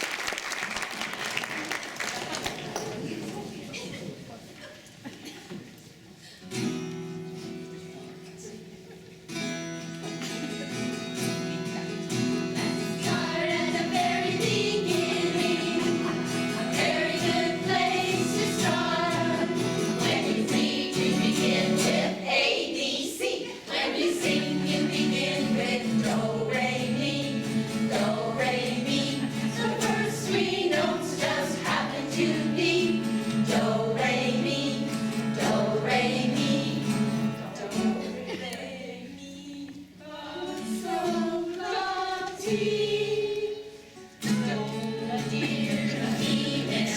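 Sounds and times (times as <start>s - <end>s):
women singing in harmony: 12.7s - 46.9s.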